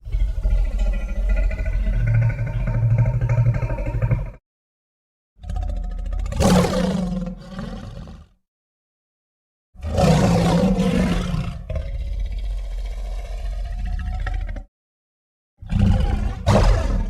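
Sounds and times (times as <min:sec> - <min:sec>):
monster roar: 0:06.4 - 0:08.3, 0:15.6 - 0:17.0.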